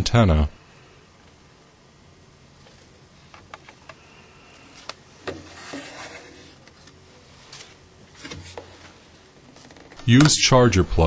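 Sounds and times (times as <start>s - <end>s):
scraping rustle: 5.3s - 6.6s.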